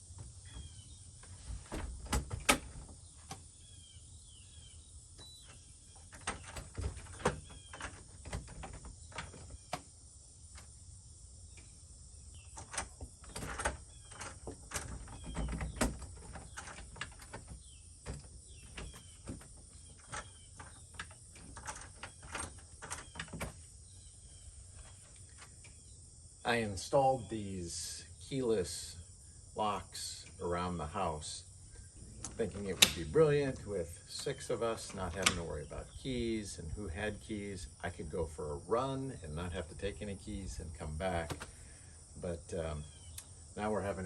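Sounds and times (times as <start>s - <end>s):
door lock clicks and knocks: 1.7s - 3.4s, 12.5s - 23.6s, 32.7s - 33.1s.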